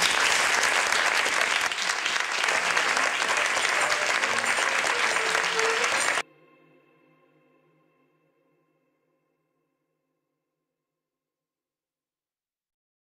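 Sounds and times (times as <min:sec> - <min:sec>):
audience applauding: 0:00.0 - 0:06.2.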